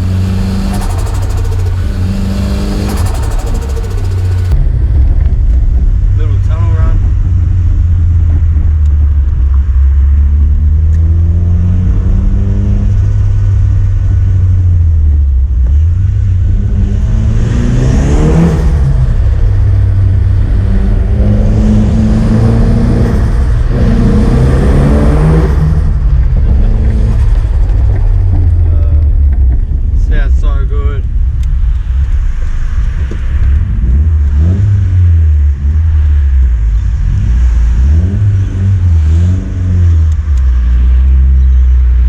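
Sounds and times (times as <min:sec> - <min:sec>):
rushing intake noise: 0:00.0 - 0:04.6
turbocharged car engine accelerating: 0:00.0 - 0:05.4, 0:15.6 - 0:30.4.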